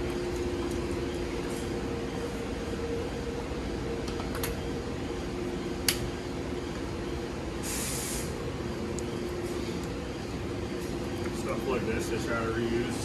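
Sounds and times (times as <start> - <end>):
workshop hum: 0.0 - 13.0
short hiss: 7.6 - 8.3.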